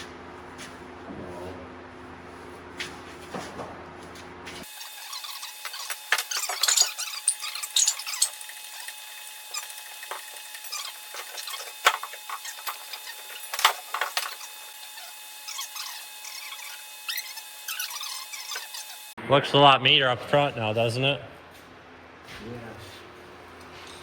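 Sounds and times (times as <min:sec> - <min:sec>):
hand work on metal parts: 0:04.6 - 0:19.1.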